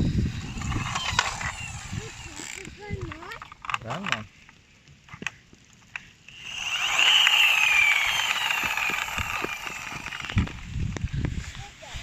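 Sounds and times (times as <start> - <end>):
toy car electric motor whining: 0.0 - 3.6, 6.3 - 10.8.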